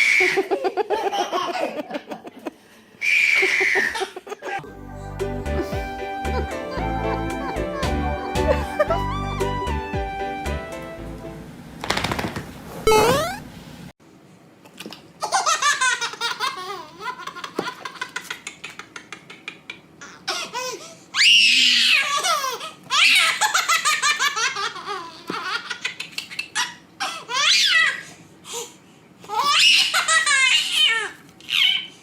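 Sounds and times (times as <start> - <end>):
baby squealing: 3.0 - 4.2, 29.3 - 31.9
baby laughing: 3.3 - 4.6, 5.5 - 9.5, 14.8 - 20.9, 21.8 - 28.0, 29.3 - 31.9.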